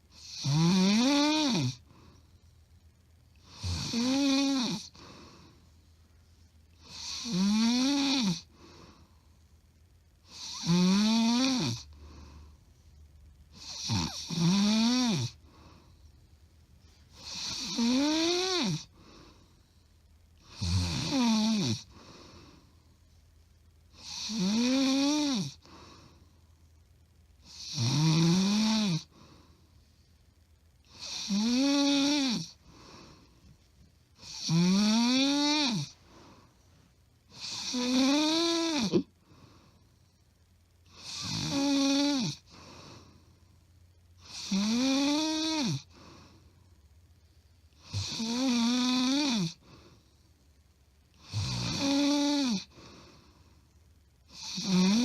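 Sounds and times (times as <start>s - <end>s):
woman snoring loudly: 0.1s - 1.9s, 3.4s - 5.1s, 6.8s - 8.5s, 10.3s - 11.9s, 13.6s - 15.4s, 17.2s - 18.9s, 20.4s - 22.0s, 24.0s - 25.8s, 27.5s - 29.1s, 30.9s - 33.0s, 34.2s - 36.0s, 37.3s - 39.1s, 40.9s - 42.6s, 44.2s - 46.0s, 47.8s - 49.6s, 51.2s - 52.8s, 54.3s - 55.0s.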